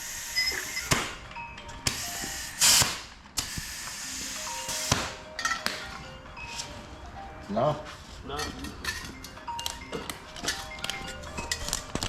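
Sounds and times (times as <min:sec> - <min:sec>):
faint background music: 0:00.0 - 0:12.0
loud air hiss: 0:02.0 - 0:05.2.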